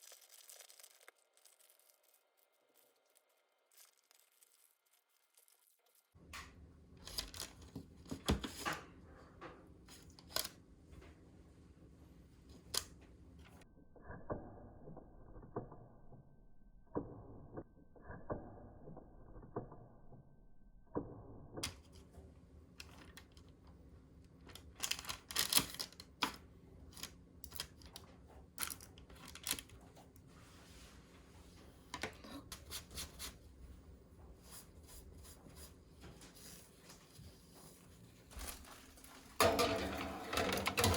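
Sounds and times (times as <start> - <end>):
plastic packaging cut and torn: 0.0 - 5.8, 24.8 - 26.1.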